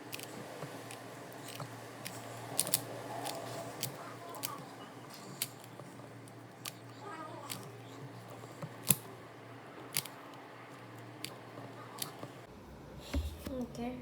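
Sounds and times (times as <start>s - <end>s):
puzzle cube clicking: 0.1s - 9.1s, 9.9s - 10.2s, 10.8s - 12.3s.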